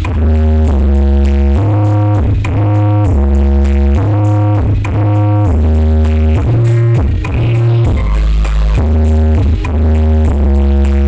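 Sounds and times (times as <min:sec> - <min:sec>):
electronic music with heavy bass: 0:00.0 - 0:11.0.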